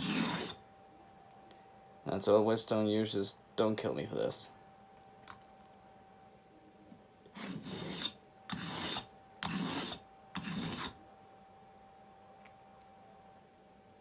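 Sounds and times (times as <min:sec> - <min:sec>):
blade rasping on whetstone: 0:00.0 - 0:00.6, 0:07.4 - 0:11.0.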